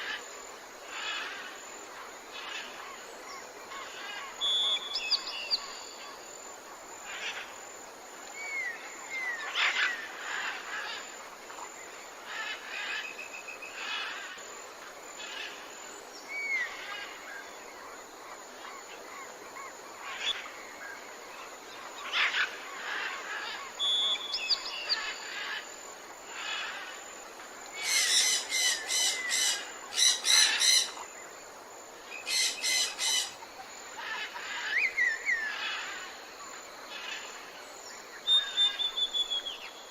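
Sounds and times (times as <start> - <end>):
faint background hiss: 0.0 - 39.9
birds chirping and calling: 27.7 - 31.1, 32.2 - 35.9.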